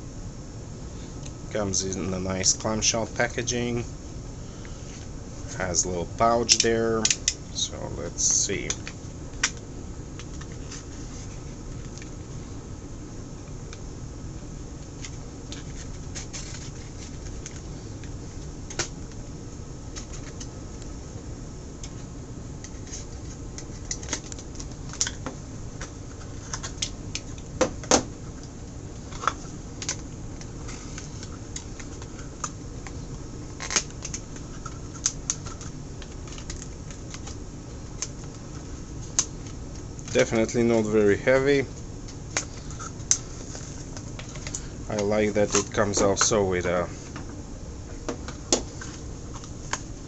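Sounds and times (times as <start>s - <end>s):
steady low hum: 0.0s - 50.0s
plastic packaging clicks and crackles: 29.1s - 40.6s.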